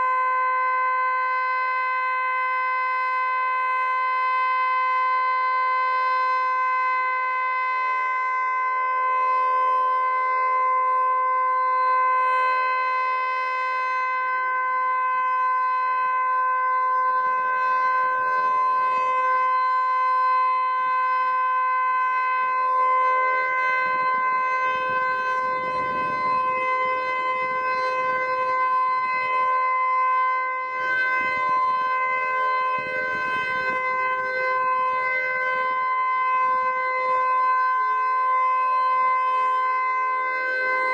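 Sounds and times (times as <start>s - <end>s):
warning siren steady tone: 0.0s - 40.9s
low rumbling noise: 23.8s - 35.0s.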